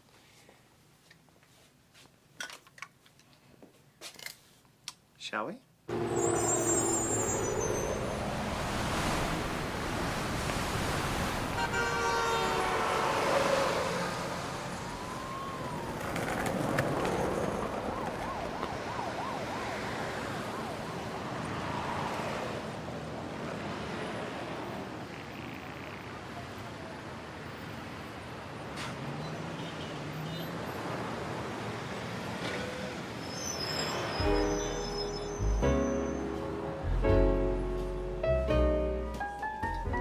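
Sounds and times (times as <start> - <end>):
siren rising and falling: 5.9 - 8.5, 12.9 - 16.3, 17.1 - 22.2
vehicles passing: 5.9 - 38.2.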